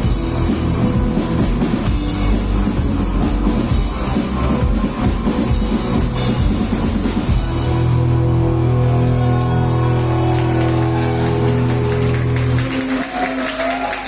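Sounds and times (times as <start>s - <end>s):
drum and cymbal strikes: 0.0s - 8.0s
sustained chord on bass and guitars: 5.7s - 9.7s.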